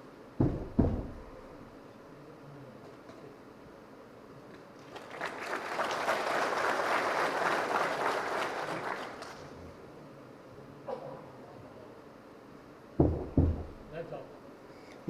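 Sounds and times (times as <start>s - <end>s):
audience clapping: 4.8s - 9.8s.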